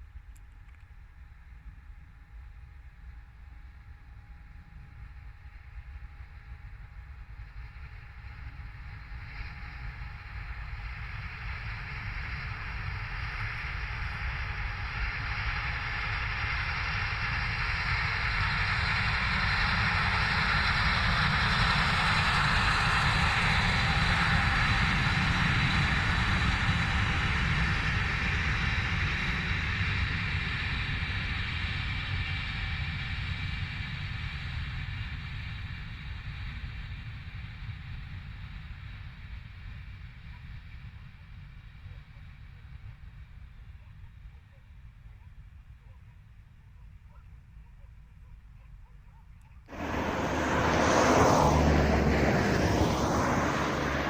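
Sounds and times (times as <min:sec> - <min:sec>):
train passing: 0:49.7 - 0:54.0.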